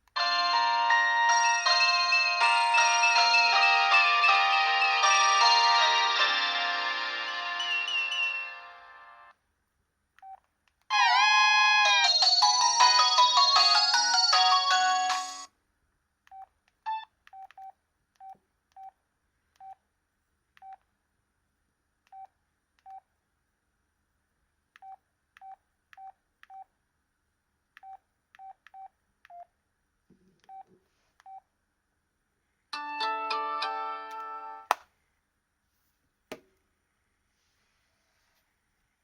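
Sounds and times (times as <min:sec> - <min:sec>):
polyphonic ringtone: 0:00.2 - 0:09.3, 0:11.8 - 0:15.5.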